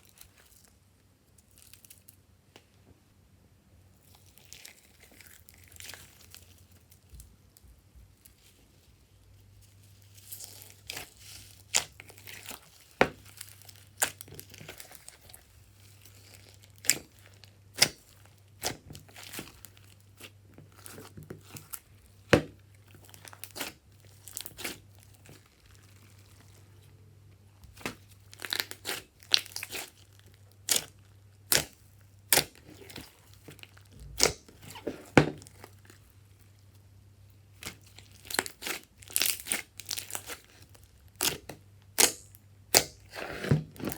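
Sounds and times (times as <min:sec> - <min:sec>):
slime popping and crackling: 0:10.2 - 0:26.6, 0:27.6 - 0:36.1, 0:37.5 - 0:43.9.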